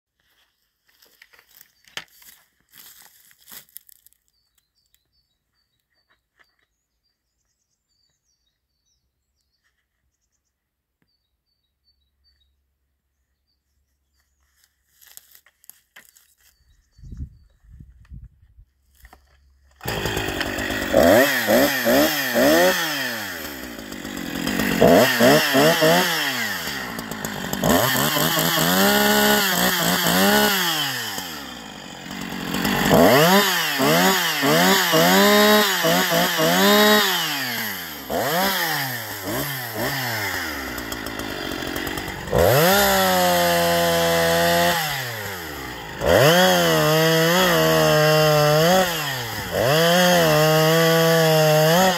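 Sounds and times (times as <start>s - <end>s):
chainsaw revving: 19.7s - 51.9s.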